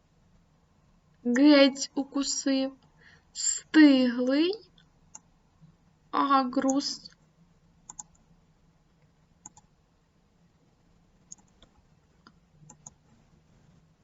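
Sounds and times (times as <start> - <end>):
low steady hum: 0.0 - 14.0
computer mouse clicks: 7.8 - 8.3, 9.0 - 9.7, 11.2 - 13.2.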